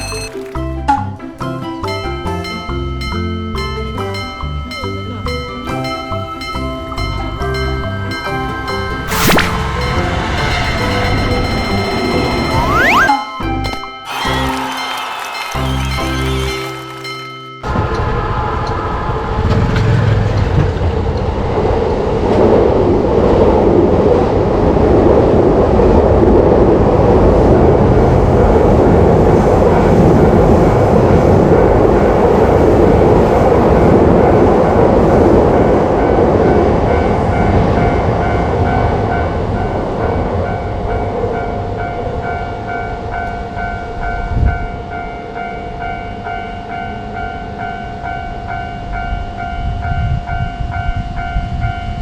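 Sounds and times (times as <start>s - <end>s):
railroad crossing warning bell: 1.8s - 14.9s, 15.6s - 18.2s, 27.3s - 52.0s
train wheels rumbling on rails: 17.7s - 52.0s.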